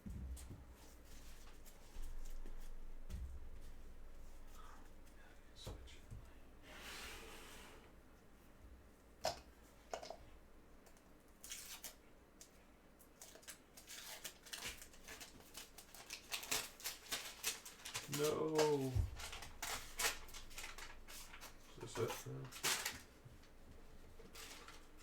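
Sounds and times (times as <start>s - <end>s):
cards rustling and clicking: 10.9s - 23.6s.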